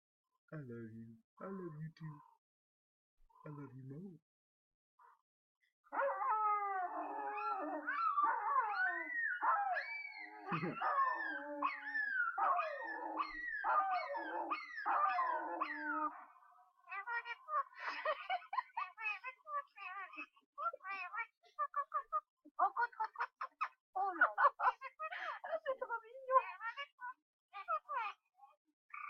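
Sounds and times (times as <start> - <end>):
dog howling and whining: 5.9 - 17.5.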